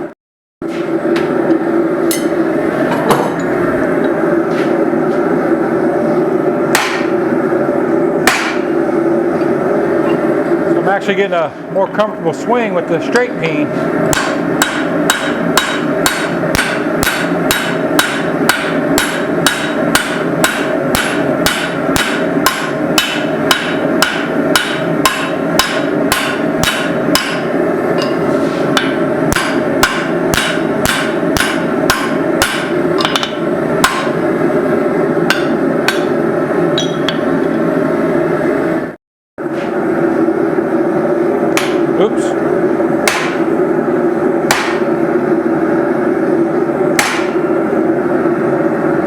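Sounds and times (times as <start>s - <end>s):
steady hum: 0.0s - 49.0s
hammer striking hot steel on anvil: 2.1s - 2.4s, 6.7s - 7.2s, 8.2s - 8.8s, 14.1s - 34.2s, 35.2s - 36.2s, 36.8s - 37.5s, 41.5s - 42.0s, 43.0s - 43.5s, 44.4s - 45.0s, 46.9s - 47.5s.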